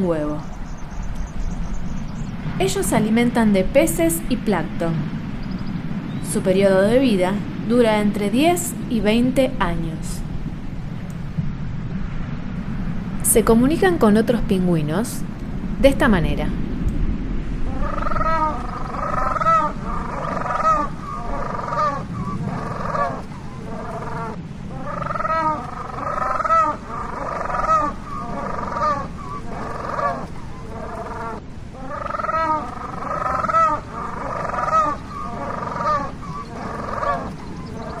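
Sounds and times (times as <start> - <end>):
low steady rumble: 0.0 - 38.0
penguins calling: 17.7 - 38.0.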